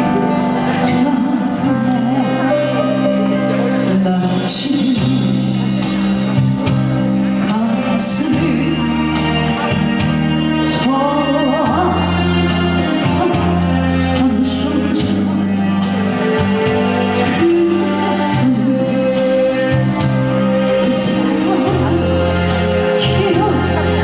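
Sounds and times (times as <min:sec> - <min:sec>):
person singing with vibrato: 0:00.0 - 0:24.0.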